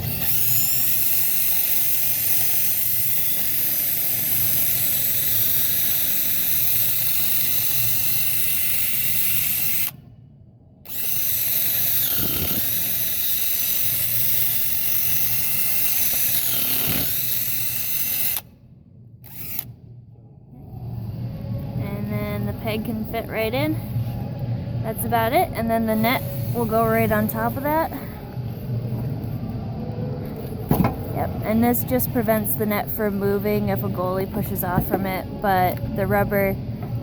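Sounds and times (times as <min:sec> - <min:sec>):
power drill whining: 0:00.0 - 0:10.0, 0:10.9 - 0:18.5, 0:19.2 - 0:19.7.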